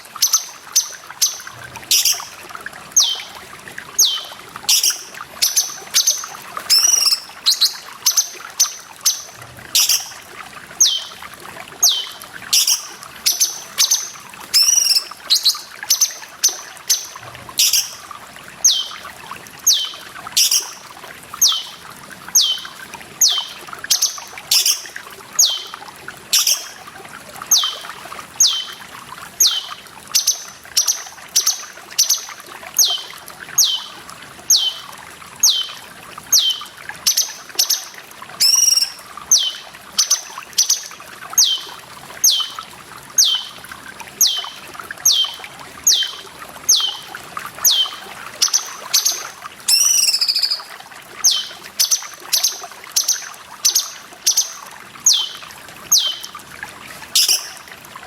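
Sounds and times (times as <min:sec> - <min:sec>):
water trickling: 0:00.0 - 0:58.0
bird calling: 0:03.0 - 0:03.3, 0:04.0 - 0:10.2, 0:11.8 - 0:18.0, 0:18.6 - 0:19.0, 0:19.7 - 0:20.8, 0:22.4 - 0:25.8, 0:29.4 - 0:42.6, 0:43.2 - 0:43.6, 0:44.2 - 0:56.3.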